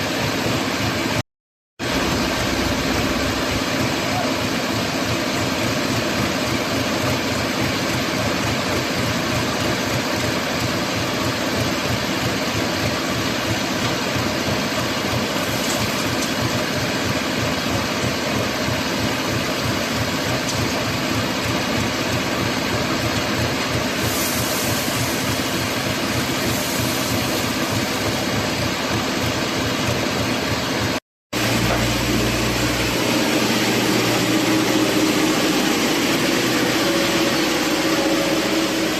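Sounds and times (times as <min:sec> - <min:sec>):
pump engine running: 0:00.0 - 0:01.2, 0:01.8 - 0:38.9.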